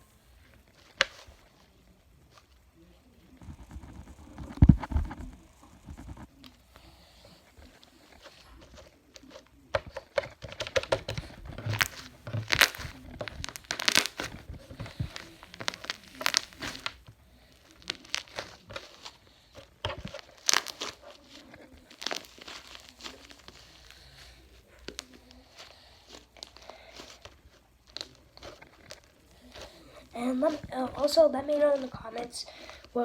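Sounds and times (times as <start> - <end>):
slime squeezed by hand: 11.2 - 17.0, 20.4 - 21.1
air bubbles popping and crackling: 11.6 - 14.3.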